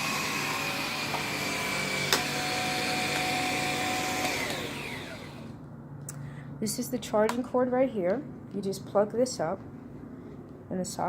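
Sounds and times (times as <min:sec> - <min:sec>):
vacuum cleaner whining: 0:00.0 - 0:05.6.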